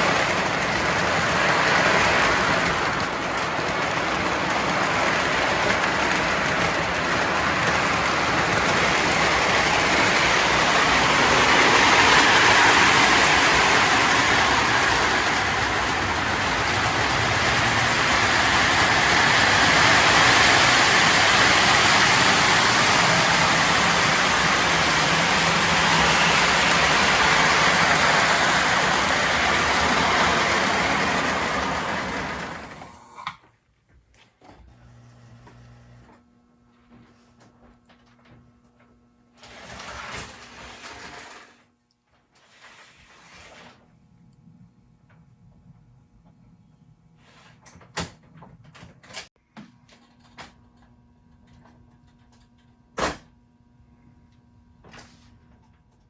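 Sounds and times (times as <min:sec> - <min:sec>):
toy train rolling and motor: 0:00.0 - 0:33.2, 0:39.4 - 0:41.7.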